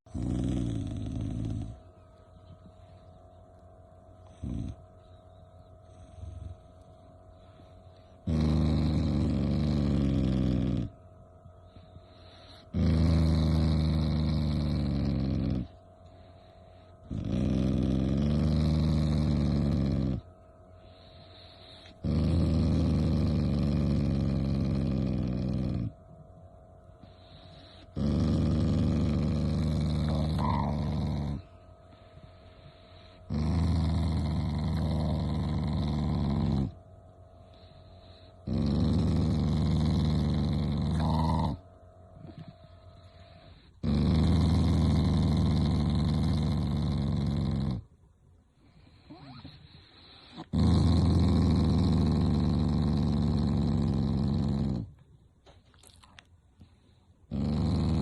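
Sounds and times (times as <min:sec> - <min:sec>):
dog rumbling low: 0:00.1 - 0:02.6, 0:08.2 - 0:11.6, 0:12.6 - 0:16.0, 0:16.9 - 0:20.7, 0:21.8 - 0:26.4, 0:27.5 - 0:32.0, 0:33.2 - 0:37.0, 0:37.8 - 0:47.9, 0:50.4 - 0:55.0, 0:57.3 - 0:58.0.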